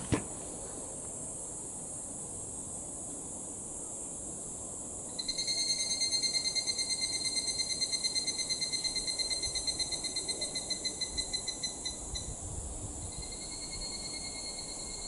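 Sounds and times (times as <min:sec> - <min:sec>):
cicada trilling: 0:04.5 - 0:15.0.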